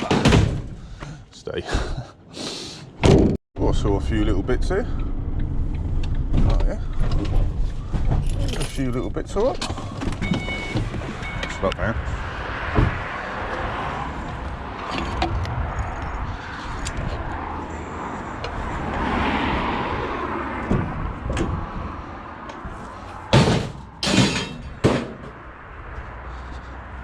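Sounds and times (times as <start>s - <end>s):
vehicle and road noise: 0.0s - 27.0s
loud metallic bangs: 23.3s - 25.5s.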